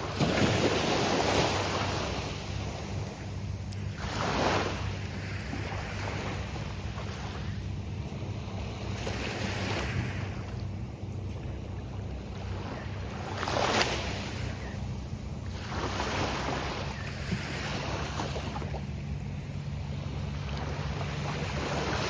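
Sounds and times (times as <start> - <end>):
surf breaking on sandy beach: 0.0 - 7.5.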